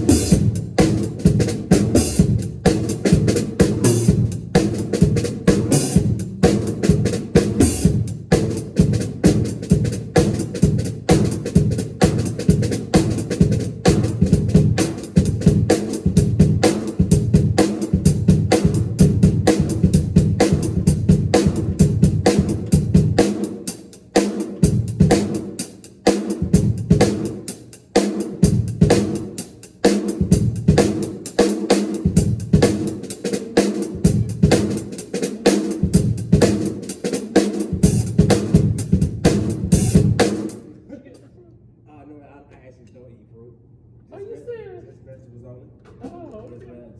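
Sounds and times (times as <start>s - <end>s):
bass drum: 0.0s - 23.7s, 24.5s - 25.6s, 26.2s - 27.5s, 28.2s - 29.4s, 30.1s - 40.7s
bass drum strikes: 37.7s - 40.5s.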